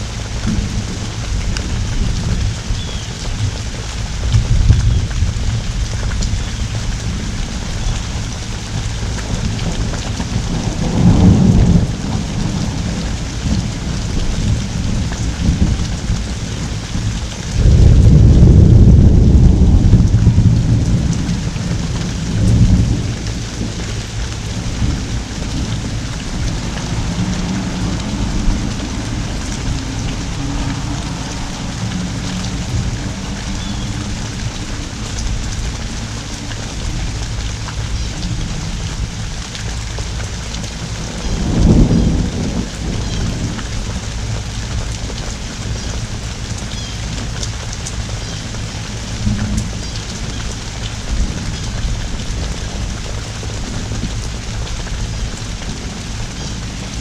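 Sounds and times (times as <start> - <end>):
pouring rain: 0.0 - 57.0
thunder rolling: 9.4 - 35.4, 41.1 - 44.0.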